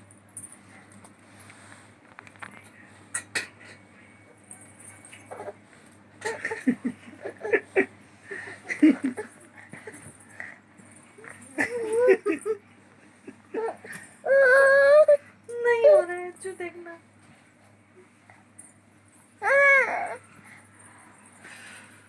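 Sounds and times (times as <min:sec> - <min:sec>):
baby babbling and giggling: 0:05.3 - 0:05.6, 0:13.5 - 0:15.2, 0:19.4 - 0:20.2.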